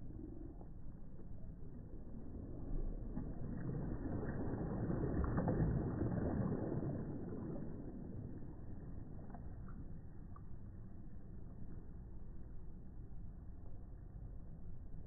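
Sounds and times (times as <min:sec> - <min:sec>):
small wave breaking: 0:02.6 - 0:09.8.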